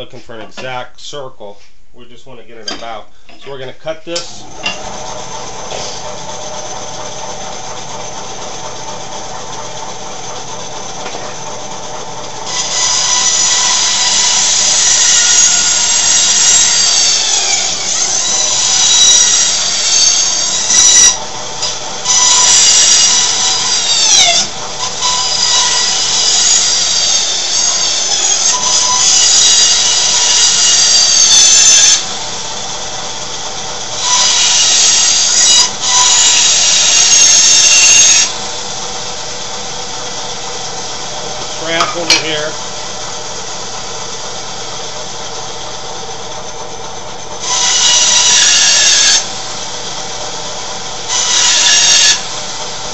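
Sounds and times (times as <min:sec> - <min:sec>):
bandsaw cutting wood: 0:04.1 - 0:45.6, 0:47.4 - 0:52.9.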